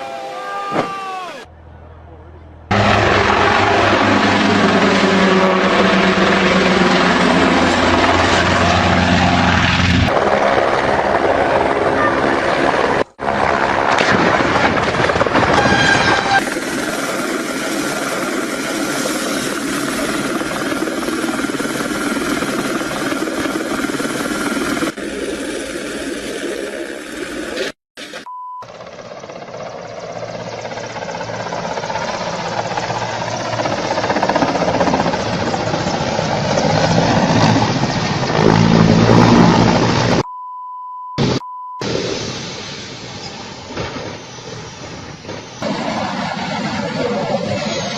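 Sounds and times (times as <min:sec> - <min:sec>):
helicopter engine and rotor: 0:02.7 - 0:13.9, 0:15.0 - 0:27.6, 0:28.6 - 0:40.3, 0:44.6 - 0:47.9
high beep tone: 0:28.2 - 0:28.6, 0:40.2 - 0:41.8.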